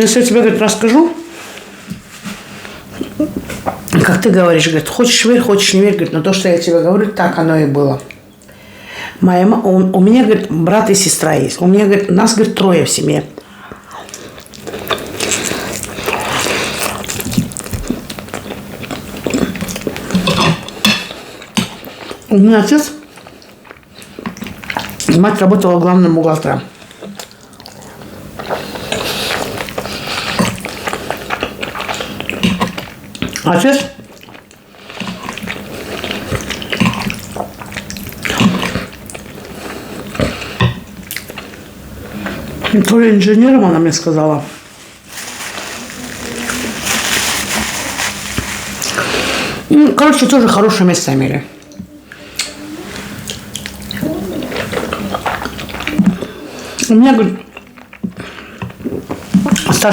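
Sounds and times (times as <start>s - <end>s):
wet chewing and biting: 27.0s - 33.4s, 34.1s - 40.4s, 53.2s - 59.7s
slurping: 51.5s - 59.7s.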